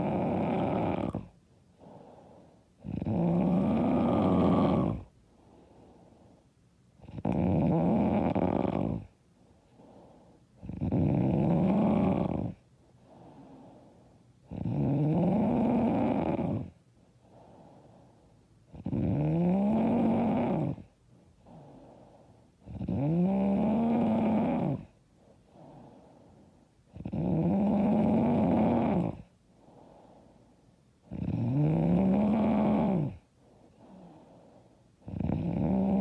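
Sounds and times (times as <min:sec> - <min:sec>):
woman snoring loudly: 0:00.0 - 0:01.3, 0:02.8 - 0:05.1, 0:07.0 - 0:09.1, 0:10.6 - 0:12.6, 0:14.5 - 0:16.7, 0:18.7 - 0:20.9, 0:22.6 - 0:24.9, 0:26.9 - 0:29.3, 0:31.1 - 0:33.2, 0:35.0 - 0:36.0
soft breaths: 0:00.0 - 0:36.0.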